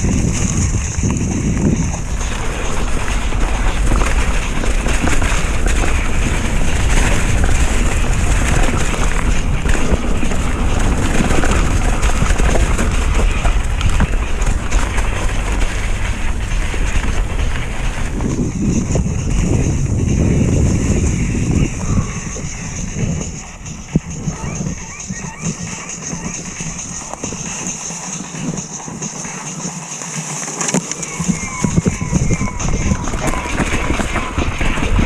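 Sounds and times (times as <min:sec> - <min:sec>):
wind buffeting microphone: 0:00.0 - 0:29.6, 0:30.7 - 0:35.0
mountain bike rattling: 0:00.0 - 0:35.0.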